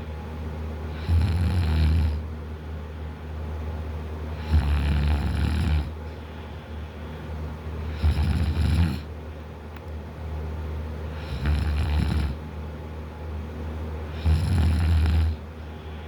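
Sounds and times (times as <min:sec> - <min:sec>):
man snoring loudly: 0:00.9 - 0:02.2, 0:04.4 - 0:05.9, 0:07.9 - 0:09.1, 0:11.2 - 0:12.4, 0:14.1 - 0:15.4
quiet breathing: 0:06.0 - 0:08.0, 0:15.3 - 0:16.0.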